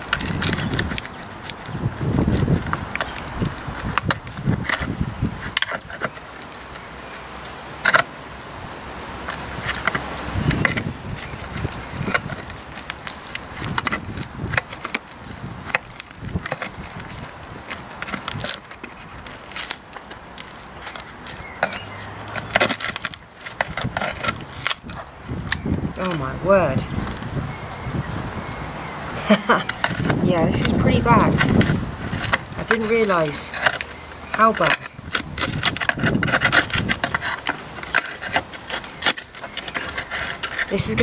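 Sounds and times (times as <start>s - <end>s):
tool scraping and knocking: 0.0s - 8.1s, 29.6s - 41.0s.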